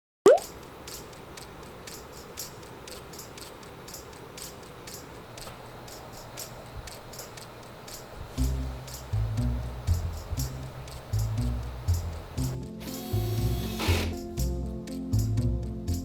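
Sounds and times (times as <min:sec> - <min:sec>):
light ticking: 0:00.4 - 0:12.6.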